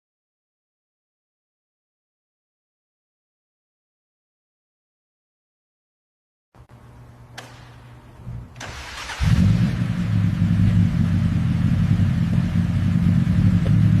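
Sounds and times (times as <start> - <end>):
car engine starting and running: 8.5 - 14.0.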